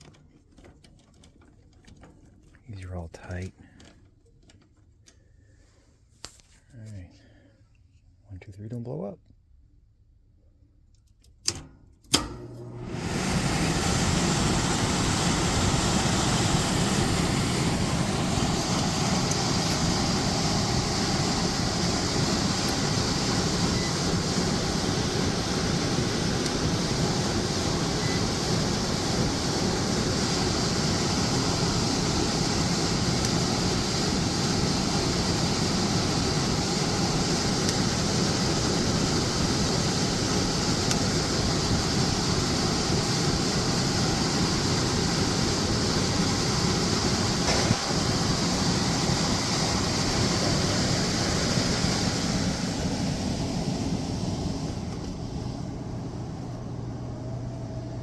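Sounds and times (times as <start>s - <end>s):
furnace click: 11.4s - 12.6s, 47.4s - 48.2s
blower air rushing: 12.2s - 58.0s
low steady hum: 44.9s - 58.0s.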